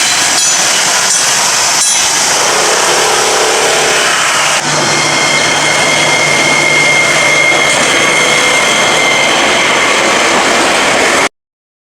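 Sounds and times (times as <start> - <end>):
crossing bell ringing: 0.0 - 10.2
train passing: 0.0 - 11.3
electronic warning tone: 2.3 - 10.0.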